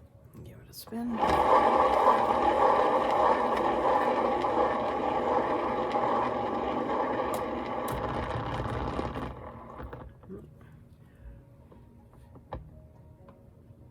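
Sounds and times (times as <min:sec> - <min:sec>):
canvas spinner whirring: 0:01.0 - 0:10.1.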